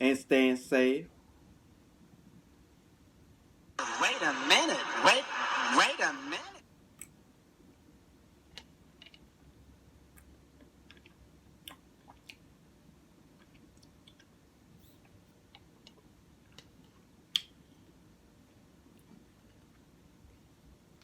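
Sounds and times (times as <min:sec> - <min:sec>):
wet mouth clicks: 0:10.9 - 0:12.4, 0:13.4 - 0:14.3.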